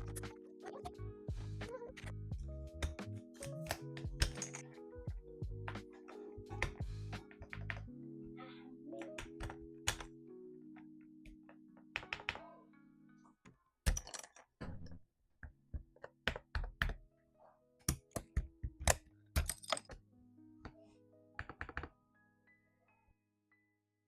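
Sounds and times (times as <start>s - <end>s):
background music with held notes: 0.0s - 13.4s.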